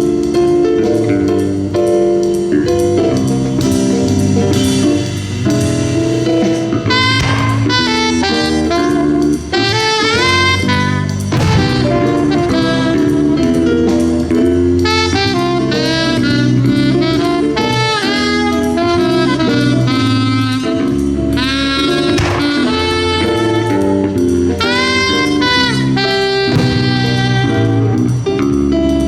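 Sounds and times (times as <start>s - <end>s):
bass line: 0.0s - 29.0s
drums: 0.0s - 29.0s
saxophone melody: 2.3s - 29.0s.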